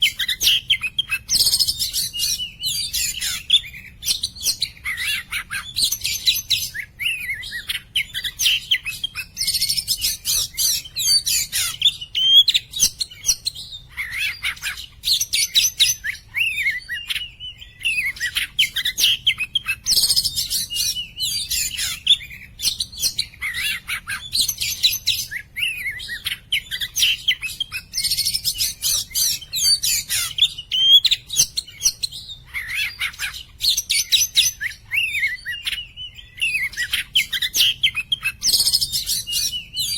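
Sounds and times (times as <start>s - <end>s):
bird singing: 0.0s - 39.9s.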